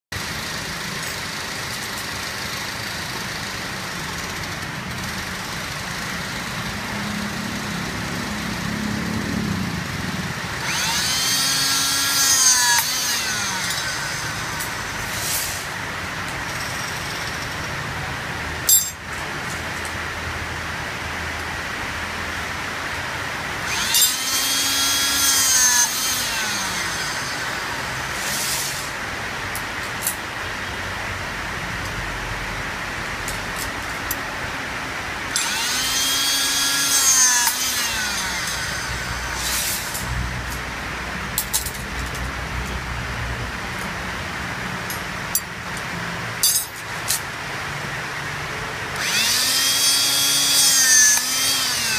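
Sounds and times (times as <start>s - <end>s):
rebar cutter motor running: 9.8s - 15.7s, 23.6s - 29.0s, 35.3s - 40.5s, 49.0s - 51.9s.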